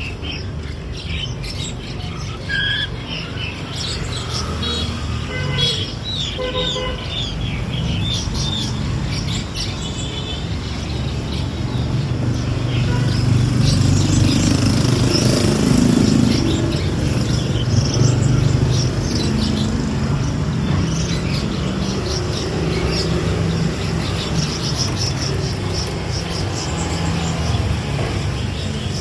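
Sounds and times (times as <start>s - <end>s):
low rumble of traffic: 0.0s - 29.0s
songbirds chirping: 0.0s - 29.0s.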